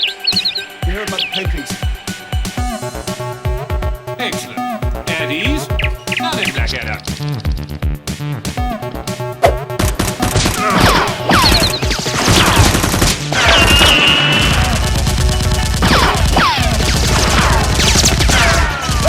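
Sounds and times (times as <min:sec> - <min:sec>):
rapid automatic gunfire: 0:09.8 - 0:19.0.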